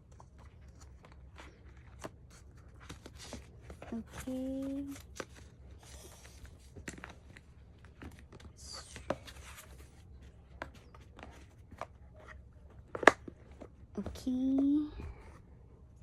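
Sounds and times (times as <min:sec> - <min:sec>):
small clicks and taps of packaging: 0:10.5 - 0:14.7.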